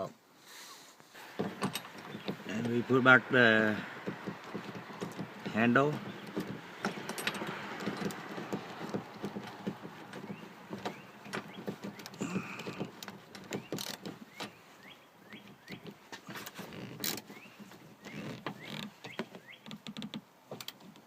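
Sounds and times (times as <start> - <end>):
small squeaks: 1.2 - 3.0, 3.6 - 21.0.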